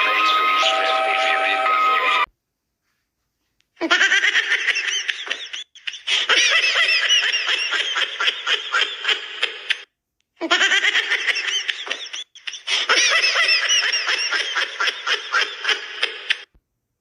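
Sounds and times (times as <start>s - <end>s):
alarm squeals rising and falling: 0.0s - 2.3s.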